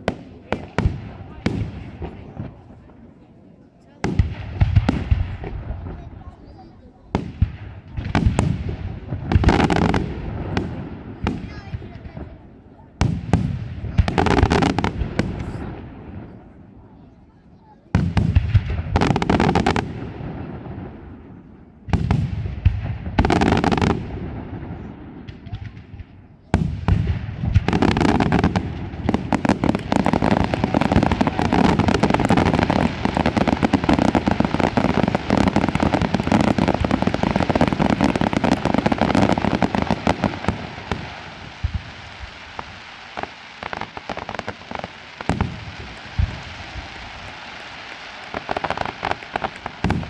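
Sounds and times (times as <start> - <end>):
rapid firework bangs and crackle: 0.0 - 50.0.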